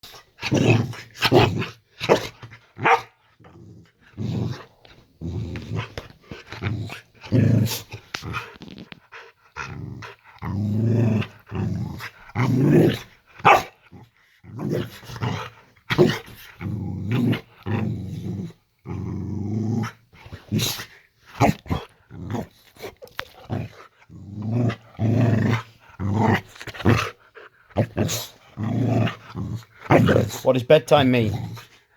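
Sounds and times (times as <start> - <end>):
dog growling: 0.1 - 31.9
dog barking: 2.8 - 3.2, 13.4 - 13.8.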